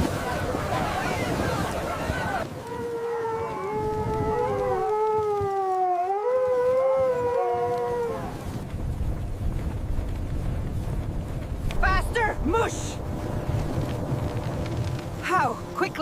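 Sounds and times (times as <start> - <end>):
low windy rumble: 0.0 - 16.0
dogs howling: 0.2 - 8.5.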